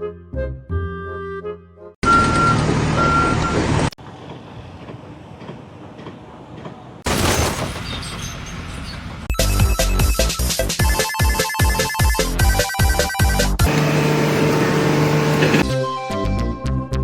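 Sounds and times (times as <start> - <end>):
heavy vehicle running: 2.0 - 9.6, 13.6 - 15.6.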